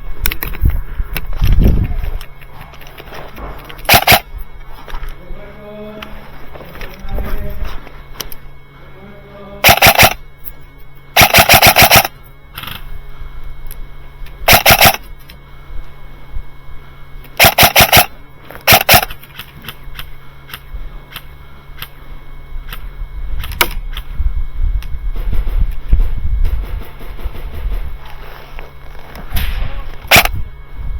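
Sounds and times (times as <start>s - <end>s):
airsoft gun firing bursts: 3.8s - 4.3s, 9.6s - 10.2s, 11.2s - 12.1s, 14.5s - 15.0s, 17.4s - 19.2s, 30.1s - 30.4s.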